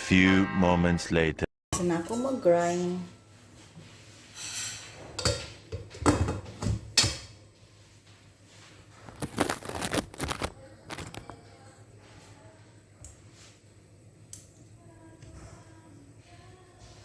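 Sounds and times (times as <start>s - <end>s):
objects knocking and clattering: 4.8s - 7.4s.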